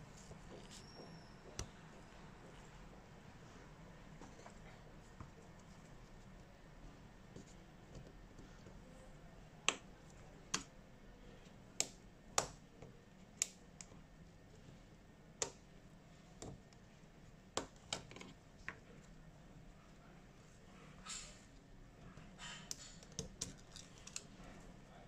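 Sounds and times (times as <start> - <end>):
small tools clicking and tapping: 22.4 - 24.4.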